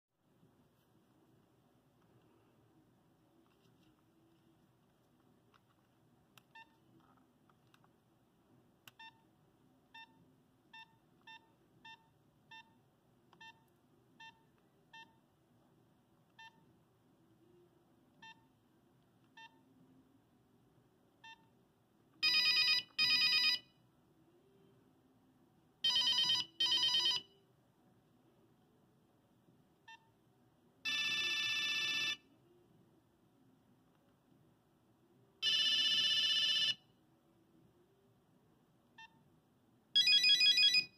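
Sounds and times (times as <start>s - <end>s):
high electronic ringtone: 22.2s - 23.7s, 25.8s - 27.3s, 30.9s - 32.2s, 35.4s - 36.8s, 40.0s - 40.9s.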